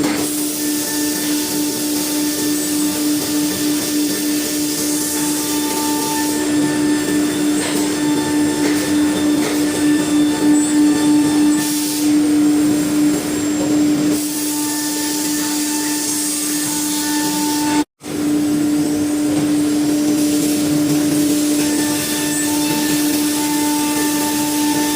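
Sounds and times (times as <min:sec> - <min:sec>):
router cutting wood: 0:00.0 - 0:12.2, 0:14.1 - 0:17.9, 0:20.7 - 0:24.9
router spindle whine: 0:00.6 - 0:17.8.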